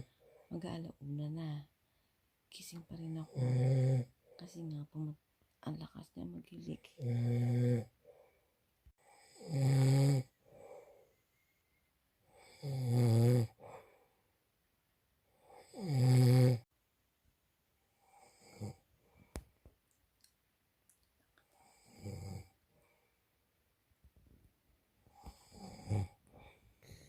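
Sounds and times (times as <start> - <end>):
man snoring loudly: 3.3 - 4.1, 7.0 - 8.0, 9.0 - 10.4, 12.3 - 13.6, 15.5 - 16.6, 18.0 - 18.8, 21.6 - 22.6, 25.2 - 26.2.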